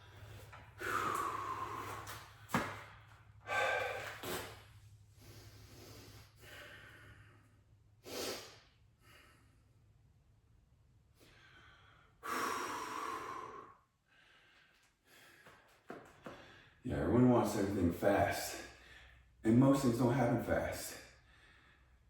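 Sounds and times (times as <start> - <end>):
man breathing heavily: 0.0 - 9.8, 11.2 - 16.8, 18.5 - 19.4, 21.0 - 22.0
man sighing exhale: 0.8 - 2.2, 3.5 - 4.6.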